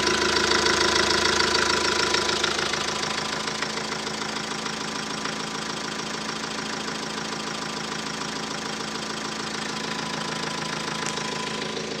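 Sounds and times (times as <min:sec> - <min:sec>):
rapid engine knock: 0:00.0 - 0:12.0
van engine idling: 0:00.0 - 0:12.0.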